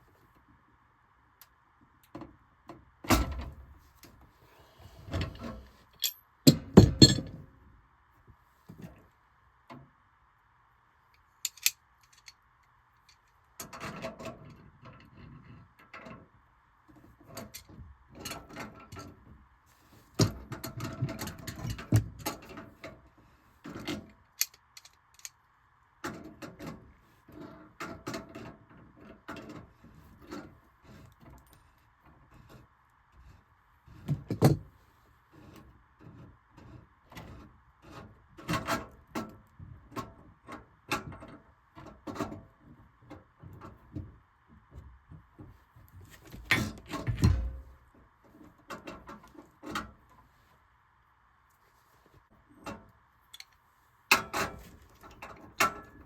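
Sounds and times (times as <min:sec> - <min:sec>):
metal tools knocking and clattering: 0:06.0 - 0:07.4.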